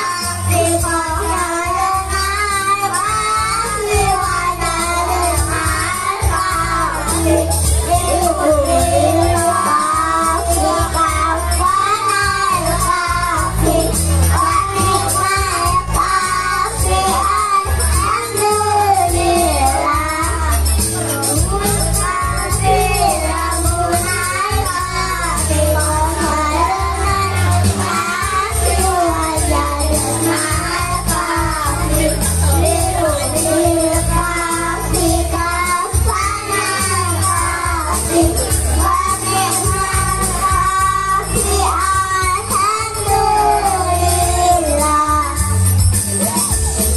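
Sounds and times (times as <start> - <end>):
child singing: 0.0 - 46.4
frame drums: 0.0 - 46.9
jingling percussion: 0.0 - 46.9.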